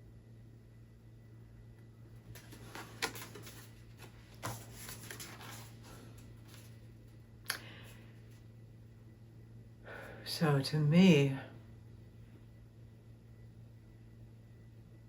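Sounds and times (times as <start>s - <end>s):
cards rustling: 2.3s - 6.8s.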